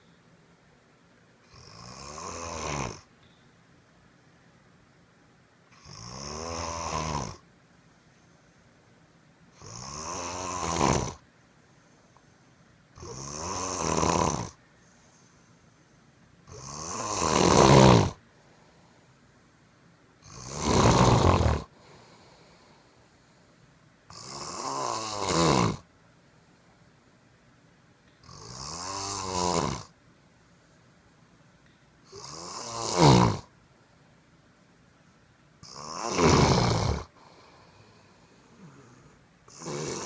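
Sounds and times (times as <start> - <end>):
man snoring: 1.5 - 3.1, 5.8 - 7.4, 9.6 - 11.2, 13.0 - 14.6, 16.5 - 18.2, 20.2 - 22.7, 24.1 - 25.9, 28.2 - 29.9, 32.1 - 33.5, 35.6 - 40.0
quiet breathing: 6.7 - 16.6, 17.5 - 20.5, 21.2 - 24.6, 25.6 - 32.5, 33.4 - 40.0.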